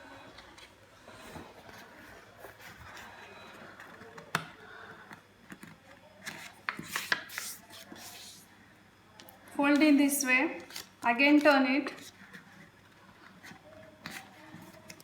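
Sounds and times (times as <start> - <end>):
paper rustling: 6.2 - 8.5.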